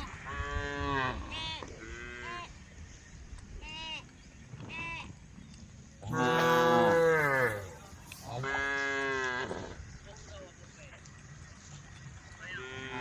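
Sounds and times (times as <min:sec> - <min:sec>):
cows mooing: 0:06.0 - 0:09.8.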